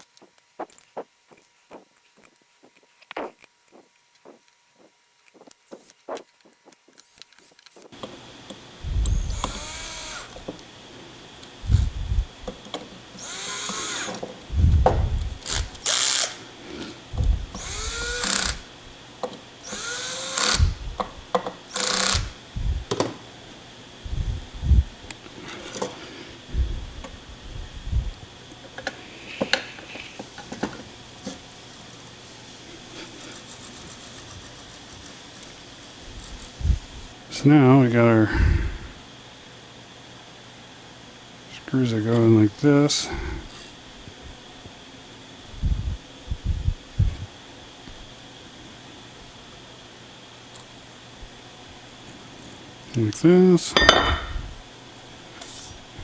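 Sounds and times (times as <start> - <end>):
power drill driving a screw: 9.1 - 10.5, 13.2 - 14.3, 15.2 - 16.4, 17.2 - 18.7, 19.6 - 21.0, 21.7 - 22.4.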